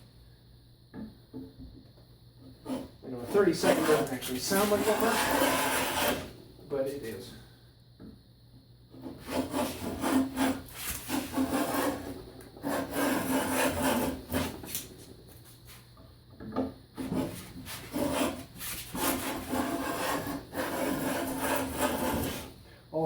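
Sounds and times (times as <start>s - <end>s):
plane rasping along wood: 2.6s - 6.3s, 9.0s - 14.7s, 17.0s - 22.5s.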